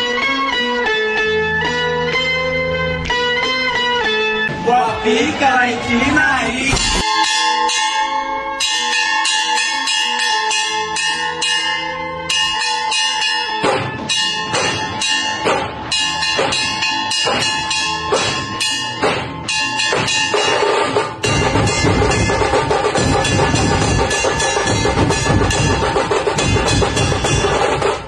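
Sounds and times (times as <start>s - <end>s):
low stepping bass line: 6.6s - 7.0s
heavy drum strikes: 6.7s - 7.1s, 13.6s - 28.0s
bell-like metallic ringing: 6.8s - 28.0s.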